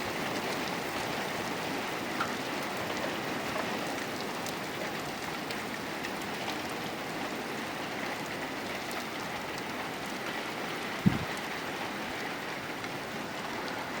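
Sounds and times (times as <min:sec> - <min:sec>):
steady rain falling: 0:00.0 - 0:14.0
brief low thump: 0:11.0 - 0:11.3.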